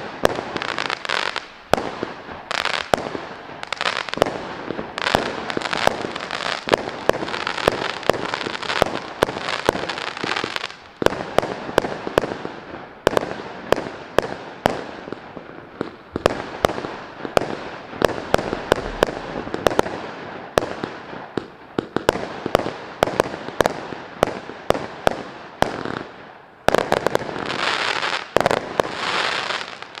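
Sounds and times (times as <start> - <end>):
crackling hiss of bursting stars: 15.6 - 21.5
firework cake popping: 15.8 - 22.3.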